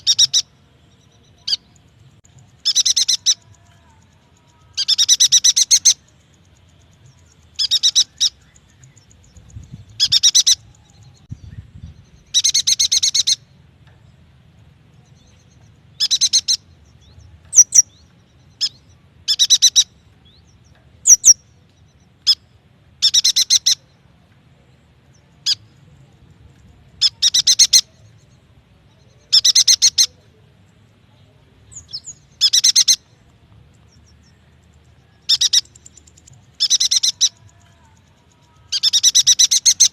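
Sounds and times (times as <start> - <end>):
bird chattering trills: 0.0 - 0.5, 1.4 - 11.6, 12.2 - 13.5, 16.0 - 16.8, 17.5 - 20.4, 21.0 - 21.4, 22.2 - 24.0, 27.0 - 28.2, 28.9 - 30.2, 31.7 - 33.2, 34.0 - 39.9.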